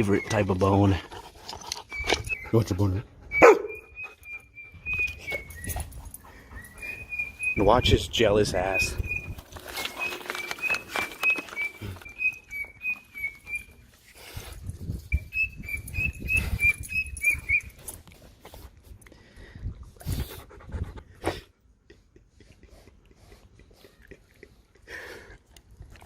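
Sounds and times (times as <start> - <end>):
dog whining: 3.2 - 7.9.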